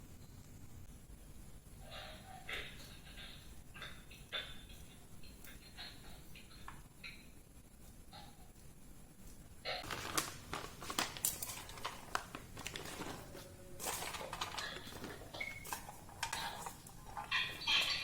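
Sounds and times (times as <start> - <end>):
plastic rustling and crinkling: 9.2 - 18.0
containers knocking and clattering: 9.8 - 18.0.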